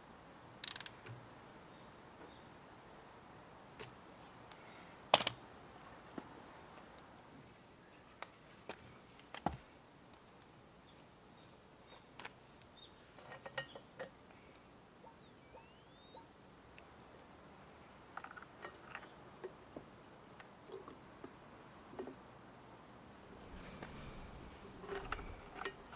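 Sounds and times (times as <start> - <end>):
rising and falling chirp: 15.2 - 17.0.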